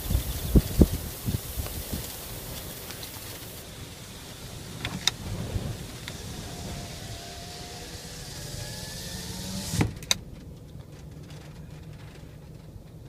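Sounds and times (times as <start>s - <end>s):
strong wind: 0.0s - 10.4s
low hum: 0.0s - 13.0s.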